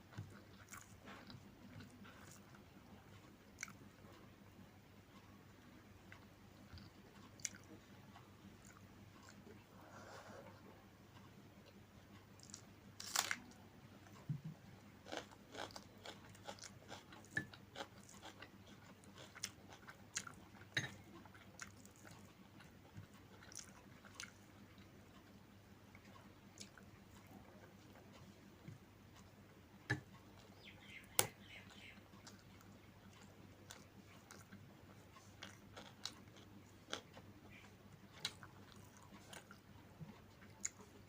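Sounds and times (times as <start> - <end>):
person chewing and crunching: 0.2 - 2.6, 6.1 - 7.7, 12.4 - 13.6, 15.0 - 25.4, 32.2 - 39.6.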